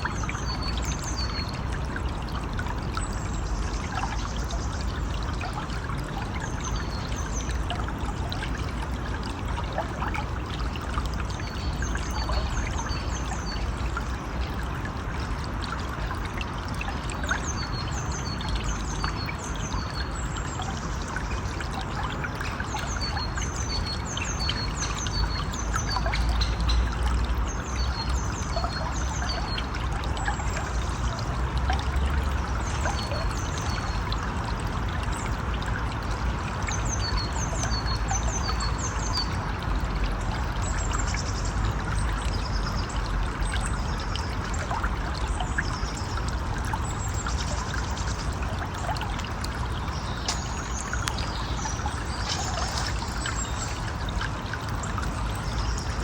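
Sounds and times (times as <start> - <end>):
stream flowing: 0.0 - 56.0
birds chirping: 49.2 - 54.0.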